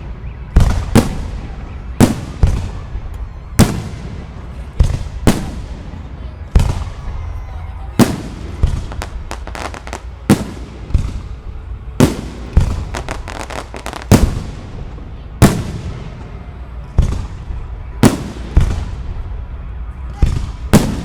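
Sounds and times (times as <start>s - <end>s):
rapid firework crackling: 0.0s - 16.2s
firework shells bursting with bangs: 12.0s - 14.7s.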